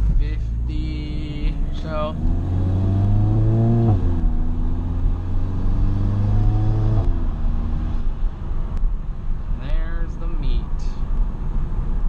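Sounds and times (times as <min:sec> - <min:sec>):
car engine accelerating: 0:00.0 - 0:08.6.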